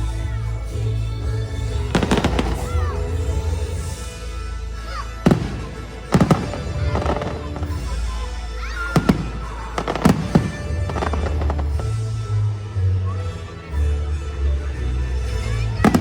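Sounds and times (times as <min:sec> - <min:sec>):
music from loudspeakers: 0:00.0 - 0:16.0
fireworks bursting with bangs: 0:01.9 - 0:03.7, 0:05.2 - 0:12.1.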